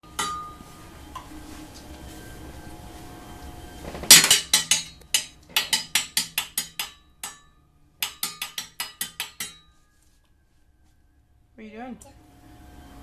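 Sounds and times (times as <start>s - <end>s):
hard object banging: 3.9s - 9.8s.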